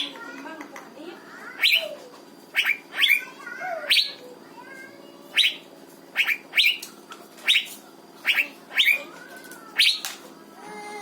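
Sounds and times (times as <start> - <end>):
bird whistling upward notes: 6.2 - 6.8, 7.5 - 9.0.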